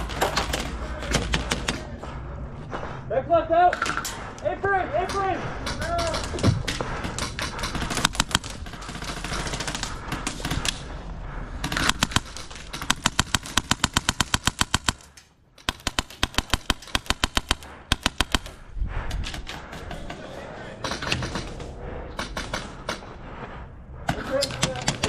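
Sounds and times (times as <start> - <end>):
airsoft guns firing: 5.0 - 10.8, 11.6 - 18.6.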